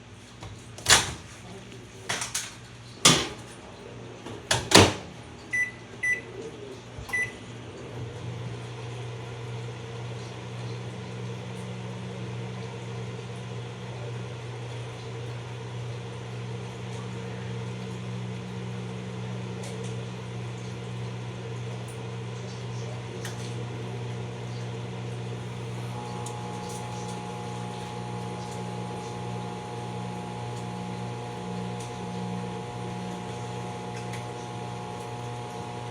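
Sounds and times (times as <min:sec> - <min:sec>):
microwave oven humming: 0:00.0 - 0:35.9
short keypad beeps: 0:05.5 - 0:06.2, 0:07.1 - 0:07.4.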